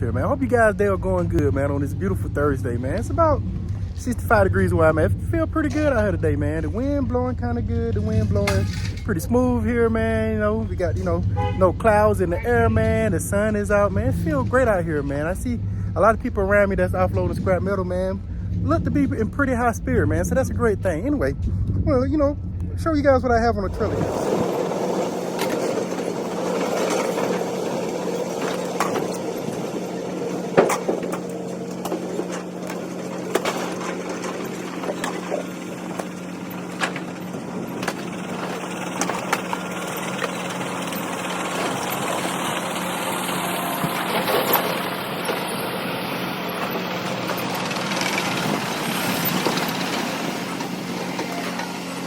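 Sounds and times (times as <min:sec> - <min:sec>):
truck engine idling: 0:00.0 - 0:52.0
metal knocks and clanks: 0:08.1 - 0:09.3, 0:25.3 - 0:40.4.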